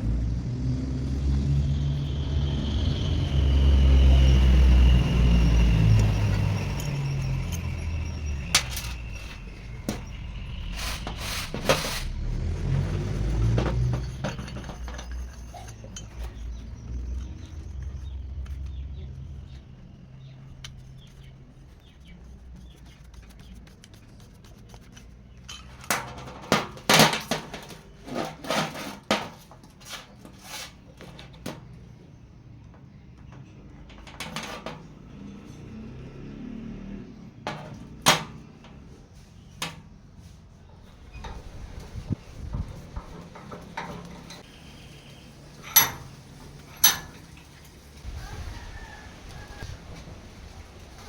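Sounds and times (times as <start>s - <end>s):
metal pieces clinking: 6.8s - 10.0s, 13.6s - 16.6s.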